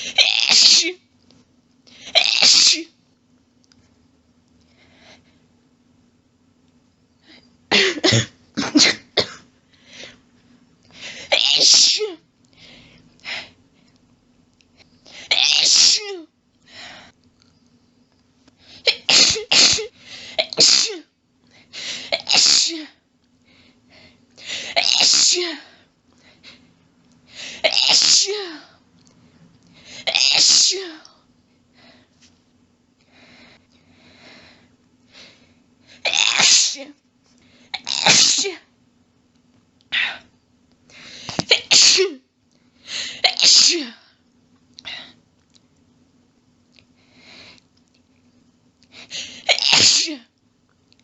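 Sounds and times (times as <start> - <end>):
person sneezing: 2.0 - 2.9, 7.7 - 9.5, 18.8 - 21.1, 36.0 - 36.9, 37.8 - 38.7, 41.1 - 42.2, 43.0 - 44.0, 49.1 - 50.3.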